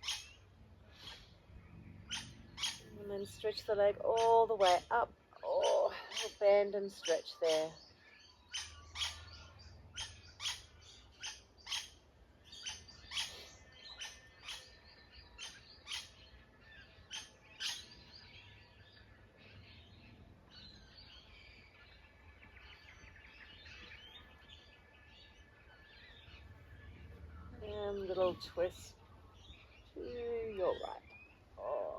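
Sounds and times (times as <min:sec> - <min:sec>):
sharp repeated bird calls: 0:00.0 - 0:01.3, 0:08.4 - 0:16.2
birds twittering: 0:00.0 - 0:31.9.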